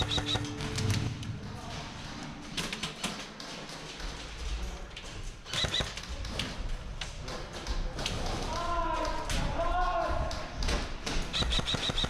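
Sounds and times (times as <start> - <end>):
airsoft guns firing: 0.0 - 0.7, 5.5 - 6.1, 11.0 - 12.0.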